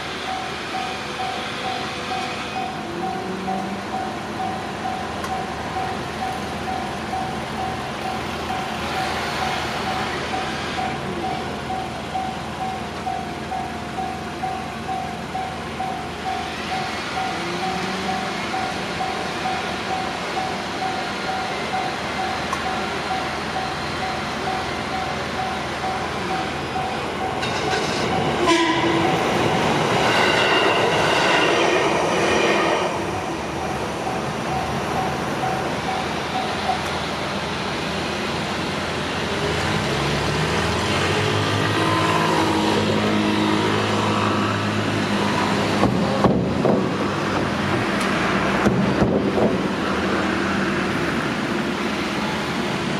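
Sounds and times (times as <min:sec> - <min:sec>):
train horn: 0:28.4 - 0:29.2, 0:30.1 - 0:33.0.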